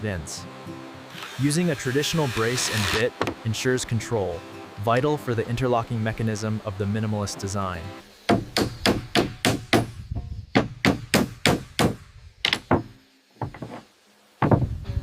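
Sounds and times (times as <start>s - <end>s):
tool knocking on wood: 3.2s - 3.4s, 10.6s - 13.8s, 14.4s - 14.7s.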